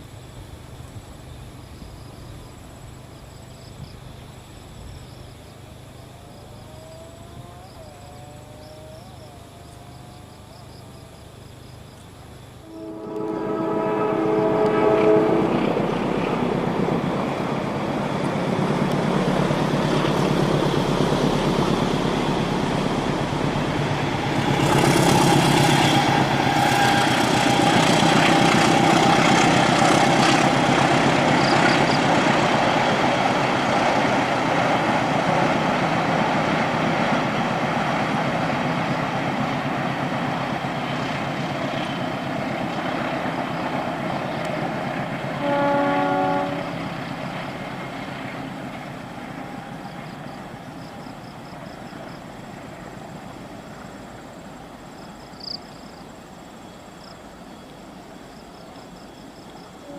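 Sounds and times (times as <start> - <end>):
train cars rumbling on rails: 0.0 - 59.9
train engine: 0.0 - 59.9
train horn: 12.6 - 16.6, 24.4 - 32.0, 45.3 - 47.0.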